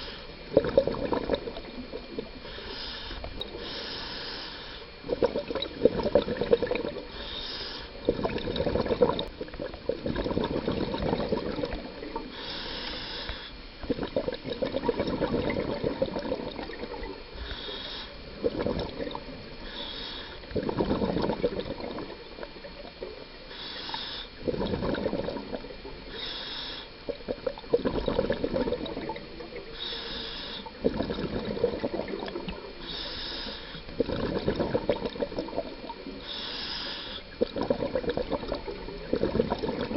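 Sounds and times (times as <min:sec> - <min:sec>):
exhaled bubbles underwater: 0:00.0 - 0:02.6, 0:04.9 - 0:12.5, 0:13.7 - 0:23.5, 0:24.3 - 0:26.2, 0:26.9 - 0:36.5, 0:37.2 - 0:39.9.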